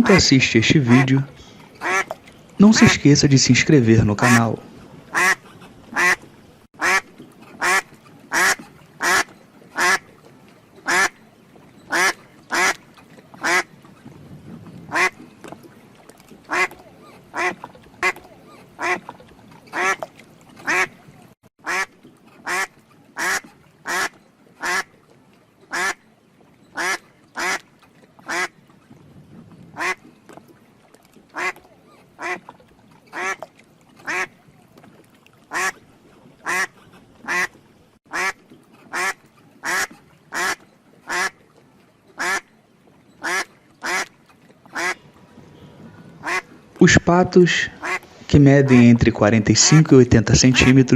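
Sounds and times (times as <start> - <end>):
duck quacking: 0.9 - 1.2, 1.8 - 2.1, 5.1 - 6.2, 6.8 - 7.0, 7.6 - 10.0, 10.9 - 11.1, 11.9 - 12.8, 13.4 - 13.7, 14.9 - 15.2, 16.5 - 18.2, 18.8 - 19.1, 19.7 - 20.0, 20.6 - 20.9, 21.6 - 24.9, 25.7 - 26.0, 26.8 - 27.6, 29.8 - 30.0, 31.4 - 31.6, 32.2 - 32.4, 34.1 - 34.3, 35.5 - 35.8, 36.4 - 37.5, 38.1 - 41.3, 42.2 - 42.4, 43.2 - 44.1, 44.7 - 45.0, 46.2 - 46.4, 47.7 - 48.0.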